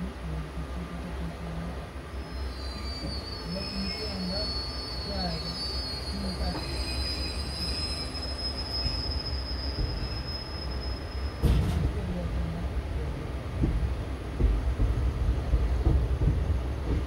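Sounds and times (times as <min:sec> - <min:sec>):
rumble of rolling train coaches: 0:00.0 - 0:17.0
train wheels squealing on rails: 0:02.1 - 0:12.1.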